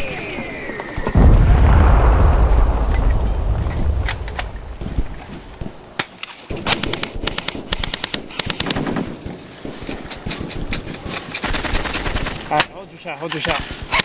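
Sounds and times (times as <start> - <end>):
airsoft guns firing: 4.2 - 12.7.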